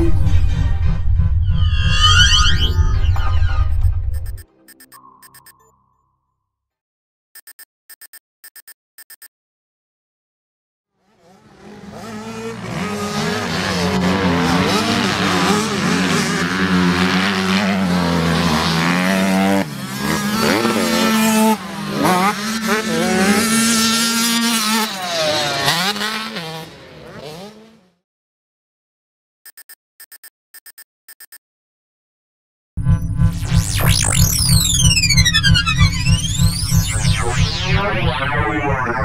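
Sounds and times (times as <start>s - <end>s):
motocross bike engines revving: 11.0s - 27.9s.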